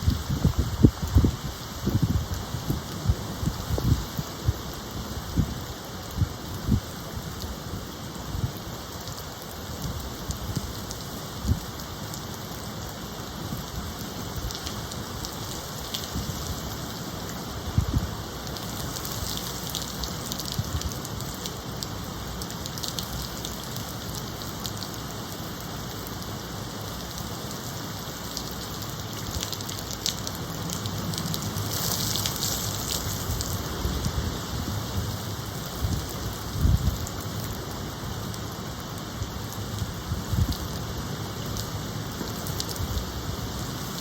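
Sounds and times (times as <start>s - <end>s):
steady rain with wind: 0.0s - 44.0s
dripping ticks: 28.3s - 33.6s.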